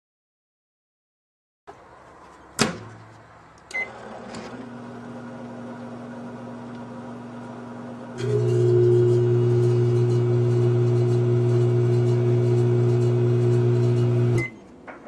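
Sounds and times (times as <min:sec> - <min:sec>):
microwave oven humming: 0:03.7 - 0:14.6.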